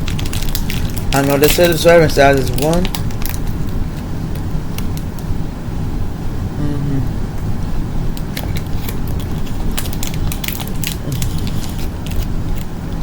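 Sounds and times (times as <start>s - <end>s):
plastic packaging crinkling: 0.0s - 3.8s, 8.2s - 12.7s
steady low rumble: 0.0s - 13.0s.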